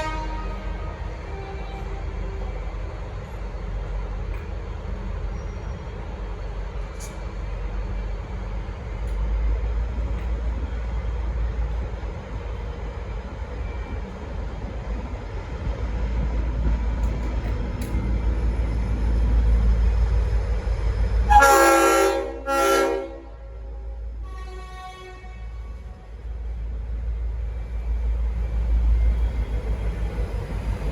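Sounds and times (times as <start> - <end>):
train air horn blasts: 0.0 - 2.0, 21.3 - 26.1
diesel locomotive engine rumble: 0.0 - 30.9.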